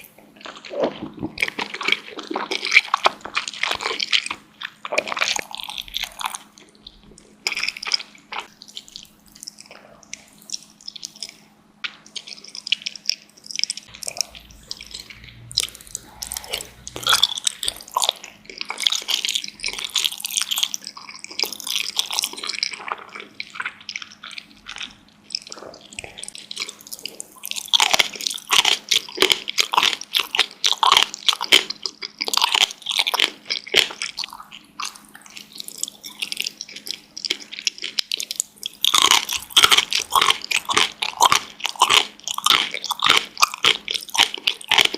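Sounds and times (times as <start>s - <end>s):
person chewing dumplings: 0.0s - 44.9s.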